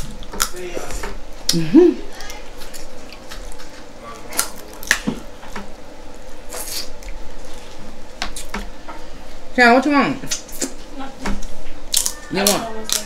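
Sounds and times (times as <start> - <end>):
crab shells cracking: 4.3 - 5.1, 11.9 - 13.0.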